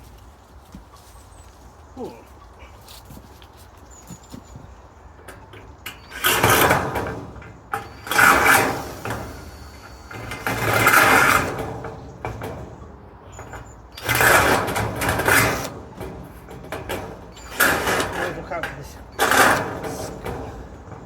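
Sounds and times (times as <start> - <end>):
rivet gun motor bursts: 5.9 - 11.8, 13.4 - 15.8, 17.3 - 20.7.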